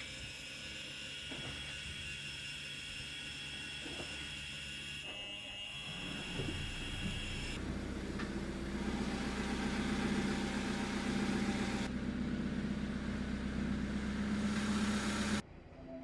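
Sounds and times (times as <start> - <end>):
boat engine humming: 6.0 - 15.4.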